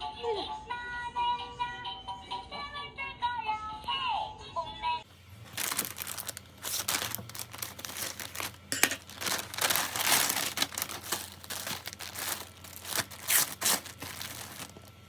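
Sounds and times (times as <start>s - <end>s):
plastic packaging crinkling: 5.2s - 15.0s.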